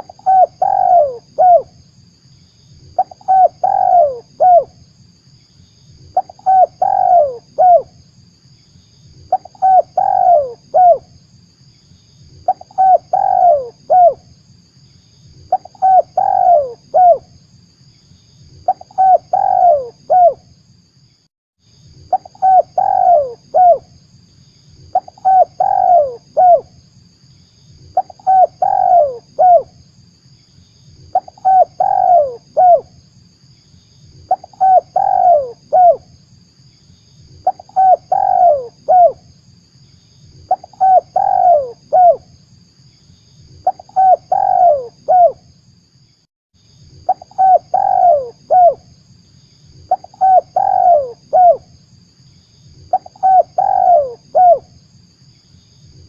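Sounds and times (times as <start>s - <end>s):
dove cooing: 0.0s - 1.7s, 3.0s - 4.7s, 6.1s - 7.9s, 9.3s - 11.0s, 12.4s - 14.2s, 15.5s - 17.3s, 18.7s - 20.4s, 22.1s - 23.9s, 24.9s - 26.7s, 28.0s - 29.7s, 31.1s - 32.9s, 34.3s - 36.0s, 37.4s - 39.2s, 40.5s - 42.2s, 43.6s - 45.4s, 47.1s - 48.9s, 49.9s - 51.7s, 52.9s - 54.7s.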